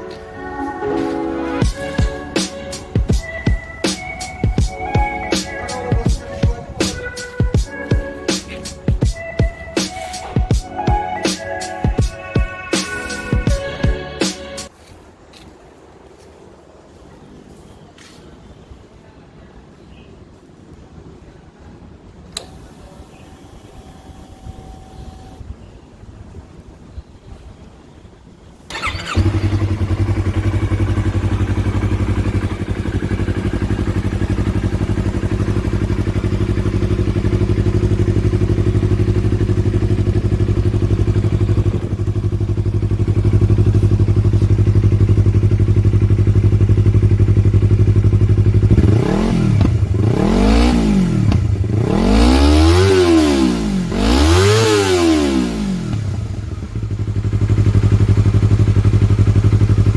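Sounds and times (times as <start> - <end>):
motorcycle engine idling: 1.6 - 11.1, 28.7 - 50.4, 55.4 - 59.9
motorcycle engine revving: 22.4 - 25.4, 28.7 - 59.9.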